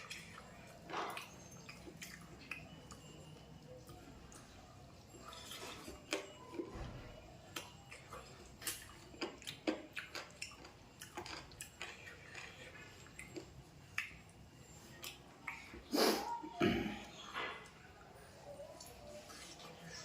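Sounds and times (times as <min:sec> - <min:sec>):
person chewing with wet smacks: 0:00.0 - 0:18.0, 0:18.6 - 0:20.0.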